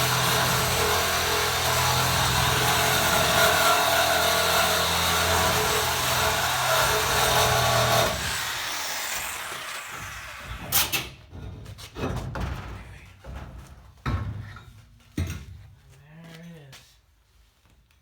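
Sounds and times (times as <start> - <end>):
power tool cutting metal: 0.0 - 11.1.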